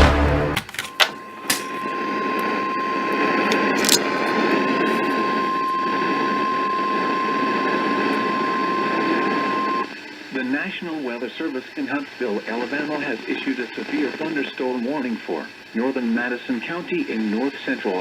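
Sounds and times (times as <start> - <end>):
receiver static: 0.6 - 18.0
high-pitched alarm beep: 0.9 - 9.9.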